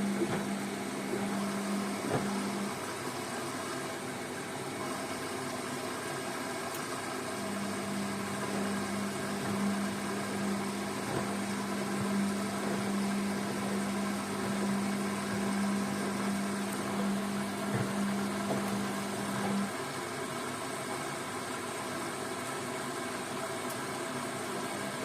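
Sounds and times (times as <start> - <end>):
steady hum: 0.0 - 20.0
washing machine running: 0.0 - 25.0.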